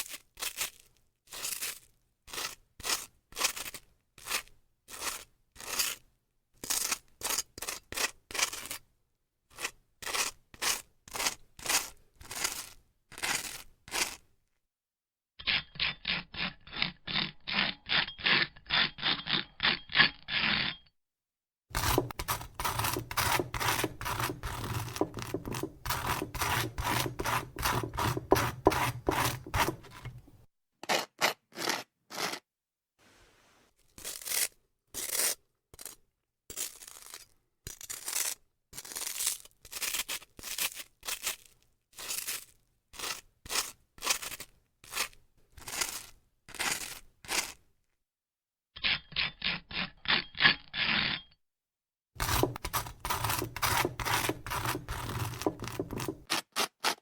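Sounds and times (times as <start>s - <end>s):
knife scraping butter on toast: 6.6s - 8.8s, 9.5s - 14.2s, 21.7s - 32.4s, 34.0s - 47.6s, 52.2s - 57.0s.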